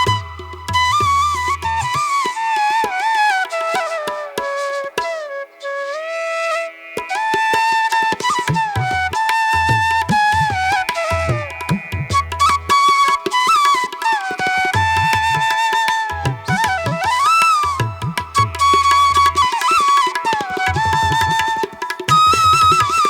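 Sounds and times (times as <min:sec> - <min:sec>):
hand drum percussion: 0:00.0 - 0:02.2, 0:07.9 - 0:23.0
gliding flute-like melody: 0:00.0 - 0:23.0.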